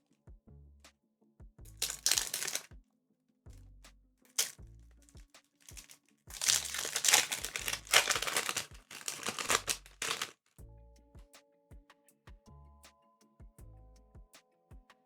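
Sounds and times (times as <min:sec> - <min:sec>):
quiet background music: 0:00.0 - 0:15.0
foil pack crinkling: 0:01.8 - 0:02.7, 0:04.3 - 0:04.6, 0:05.6 - 0:10.3
short crackles: 0:01.8 - 0:02.7, 0:04.4 - 0:04.6, 0:05.7 - 0:10.3.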